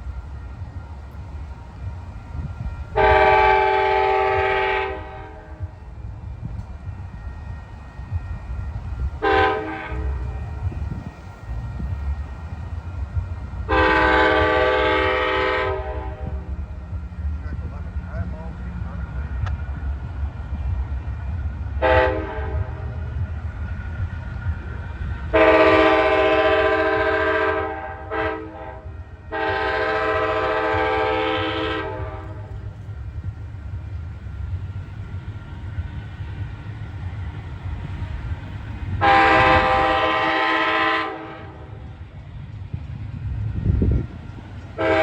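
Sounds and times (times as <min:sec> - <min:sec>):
train rumbling past: 0:00.0 - 0:45.0
locomotive air horn blasts: 0:02.9 - 0:05.6, 0:09.2 - 0:10.5, 0:13.7 - 0:16.5, 0:21.8 - 0:23.0, 0:25.3 - 0:32.7, 0:39.0 - 0:41.8, 0:44.8 - 0:45.0.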